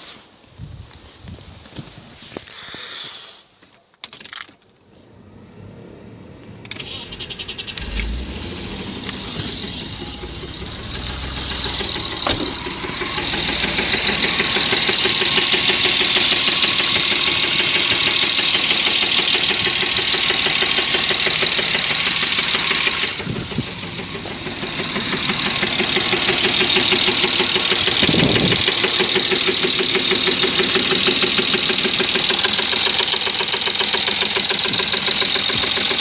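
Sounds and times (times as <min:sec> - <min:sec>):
engine starter cranking: 0:06.6 - 0:36.0
car engine running with knock: 0:07.7 - 0:36.0.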